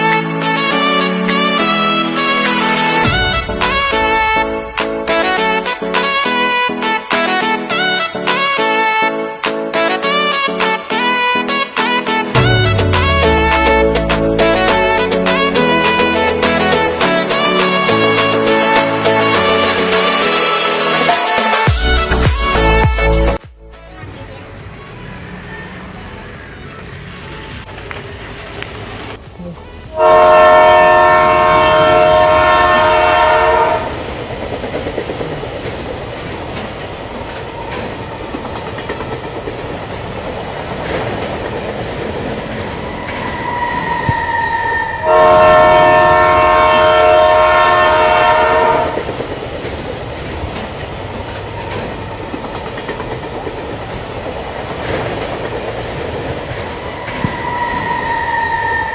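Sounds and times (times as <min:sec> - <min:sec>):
train rumbling on rails: 0:00.0 - 0:09.0, 0:09.8 - 0:23.4, 0:24.0 - 0:58.9
train horn blasts: 0:00.0 - 0:24.2, 0:29.9 - 0:34.1, 0:42.3 - 0:49.2, 0:56.5 - 0:58.9.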